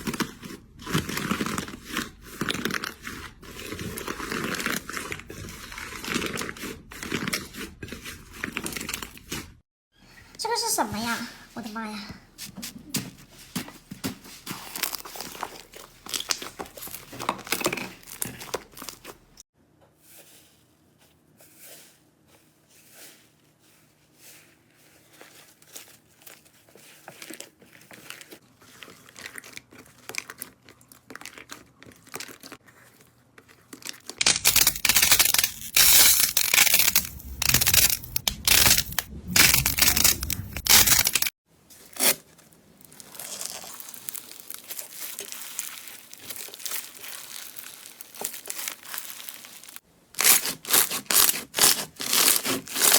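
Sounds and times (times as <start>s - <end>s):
slime squeezed crackling: 14.6s - 19.2s, 33.4s - 41.3s, 42.8s - 52.9s.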